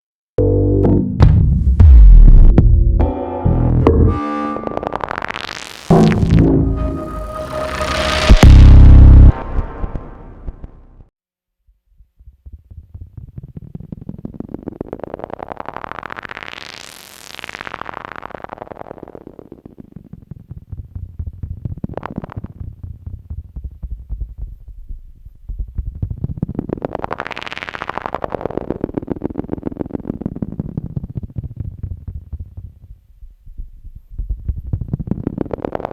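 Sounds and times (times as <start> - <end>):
pulsing synthesizer drone: 2.8 - 11.1.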